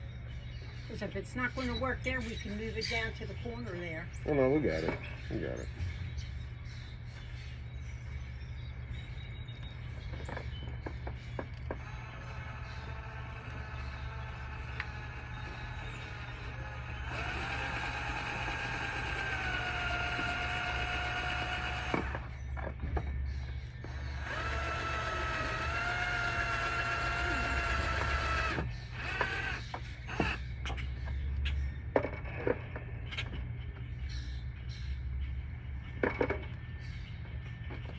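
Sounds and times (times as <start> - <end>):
power drill running: 11.7 - 22.3, 23.9 - 30.4.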